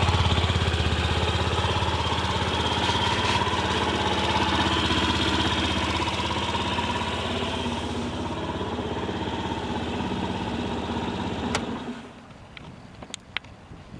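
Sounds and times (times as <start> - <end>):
scooter engine running: 0.0 - 12.3.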